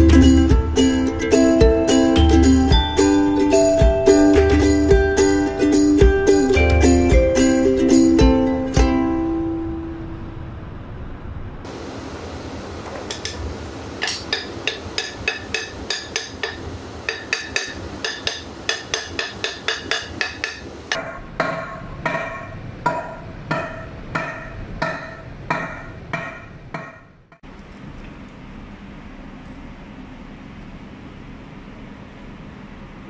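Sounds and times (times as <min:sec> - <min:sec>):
hammer ringing on metal: 0:14.0 - 0:27.2.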